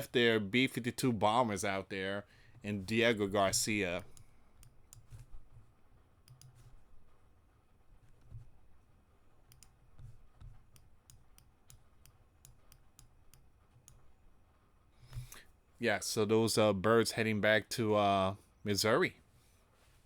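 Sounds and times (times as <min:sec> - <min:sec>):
computer mouse clicks: 0:04.0 - 0:06.9, 0:09.5 - 0:14.1.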